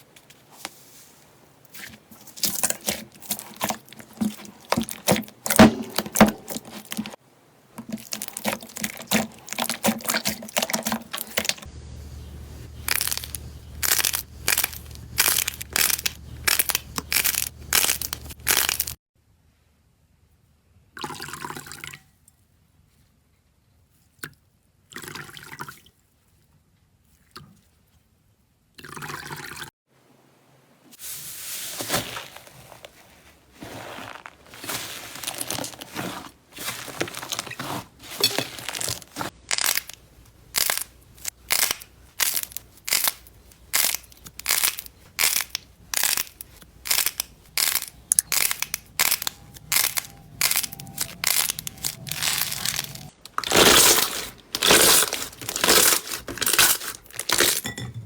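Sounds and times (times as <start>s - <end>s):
crunchy slime crackling: 1.8s - 7.2s, 7.8s - 11.7s, 12.4s - 19.0s, 33.6s - 57.6s.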